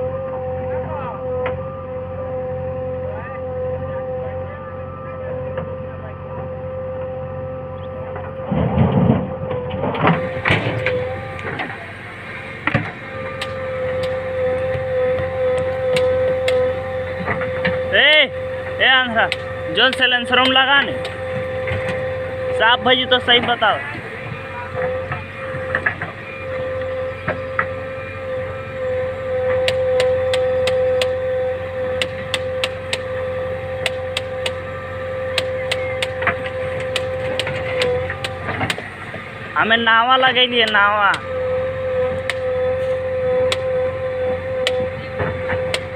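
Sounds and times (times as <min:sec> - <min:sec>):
heavy diesel machinery whining: 0:00.0 - 0:45.9
low rumble: 0:00.0 - 0:45.9
sharp clicks and knocks: 0:12.6 - 0:17.8, 0:19.2 - 0:22.0, 0:29.5 - 0:31.2, 0:31.9 - 0:33.1, 0:33.8 - 0:34.7, 0:35.3 - 0:39.2, 0:42.1 - 0:42.5, 0:44.6 - 0:45.9.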